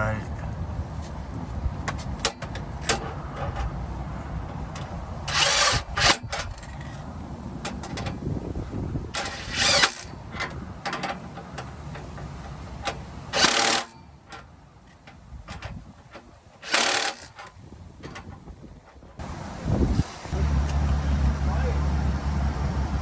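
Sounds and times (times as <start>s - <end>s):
tools clicking and knocking on metal: 1.8s - 3.7s, 9.1s - 19.2s
power tool driving bolts: 5.2s - 7.0s, 9.1s - 18.4s.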